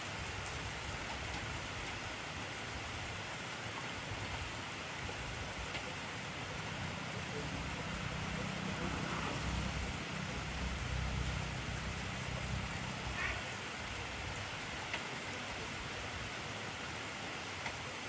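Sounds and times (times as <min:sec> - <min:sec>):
heavy rain hissing: 0:00.1 - 0:17.6.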